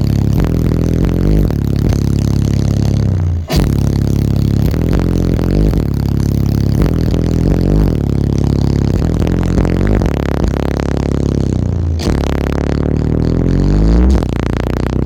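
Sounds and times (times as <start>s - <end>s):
loud bass-heavy music: 0.0s - 15.0s.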